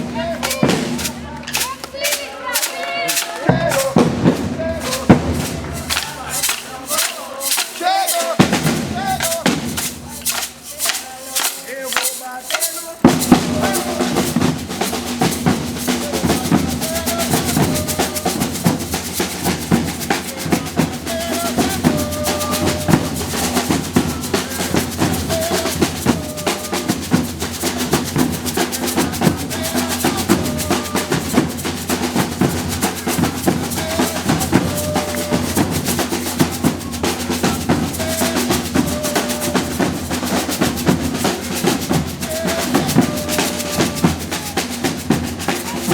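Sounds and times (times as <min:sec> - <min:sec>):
percussion band drumming: 0:00.0 - 0:45.9.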